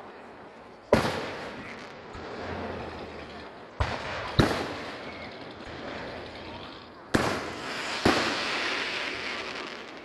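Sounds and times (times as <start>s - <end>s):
fireworks bursting: 0.9s - 10.0s.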